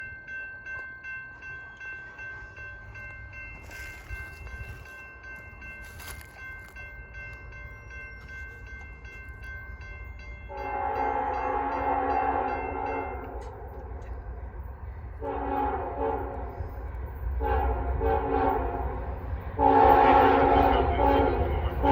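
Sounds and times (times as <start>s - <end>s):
crossing bell ringing: 0.0s - 21.9s
locomotive rumble: 1.3s - 21.9s
train air horn chord: 10.5s - 13.7s, 15.2s - 16.8s, 17.4s - 19.0s, 19.6s - 21.9s.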